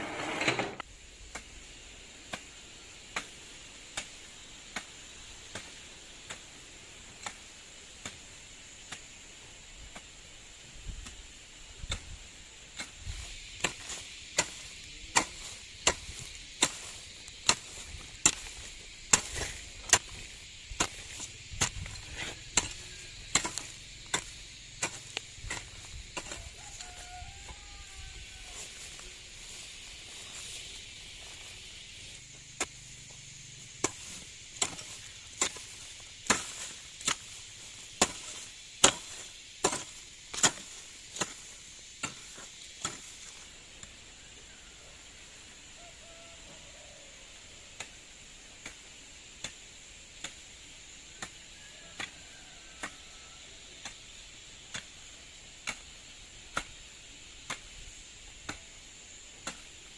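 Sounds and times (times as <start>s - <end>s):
hand tool chopping: 13.6s - 26.8s, 33.8s - 37.4s, 38.0s - 43.3s, 56.5s - 56.8s, 59.4s - 59.7s.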